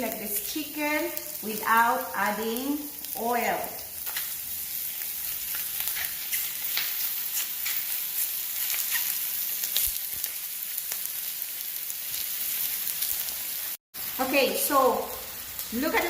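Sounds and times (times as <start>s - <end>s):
chicken sizzling in a skillet: 0.0s - 16.0s.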